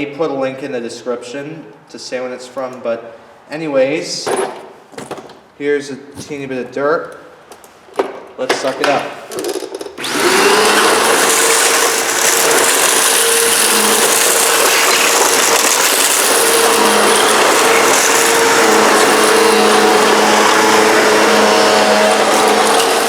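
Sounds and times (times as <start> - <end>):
upright vacuum cleaner running: 9.5 - 23.0.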